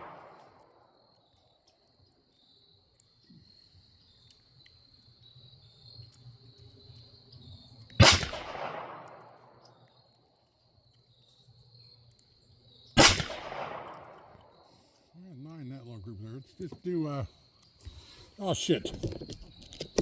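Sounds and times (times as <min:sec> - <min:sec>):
pistol shot with ringing echo: 0:00.0 - 0:00.6, 0:08.0 - 0:09.6, 0:13.0 - 0:14.6.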